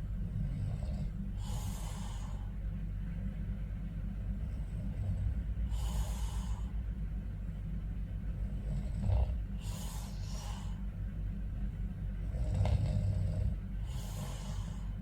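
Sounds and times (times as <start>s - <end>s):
steady low rumble: 0.0s - 15.0s
snort: 0.3s - 2.5s, 4.5s - 6.8s, 8.4s - 10.8s, 12.2s - 14.9s
man snoring: 0.4s - 2.5s, 8.4s - 10.8s, 12.2s - 14.9s.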